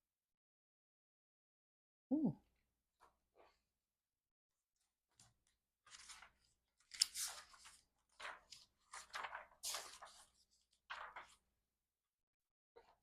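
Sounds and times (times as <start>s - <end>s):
paper rustling and crinkling: 5.2s - 11.4s.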